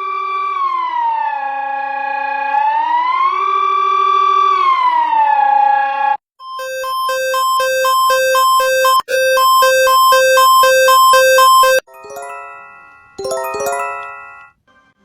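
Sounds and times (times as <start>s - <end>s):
two-tone alarm beeps: 6.4s - 12.6s
electronic multi-note chime: 6.5s - 14.5s.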